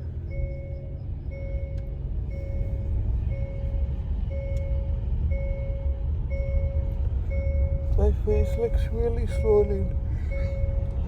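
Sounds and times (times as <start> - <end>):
vehicle engine rumble: 0.0 - 11.0
electronic warning beeps: 3.3 - 11.0.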